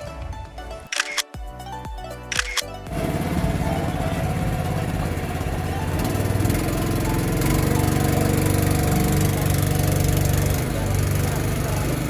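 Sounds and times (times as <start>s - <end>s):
small boat engine running: 2.7s - 12.0s.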